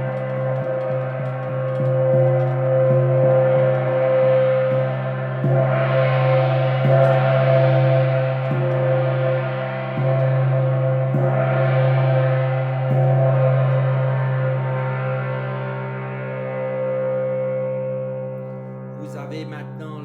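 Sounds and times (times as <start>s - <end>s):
soft gong strikes: 0.0s - 15.6s
gong ringing: 0.0s - 15.8s.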